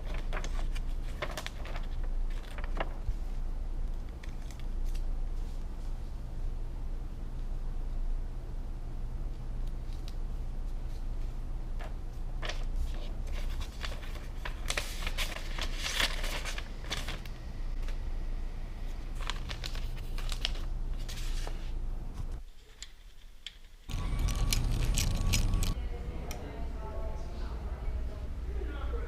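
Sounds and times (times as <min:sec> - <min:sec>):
steady low hum: 0:00.1 - 0:22.5, 0:23.9 - 0:29.0
small objects rustling and clicking: 0:22.6 - 0:25.8.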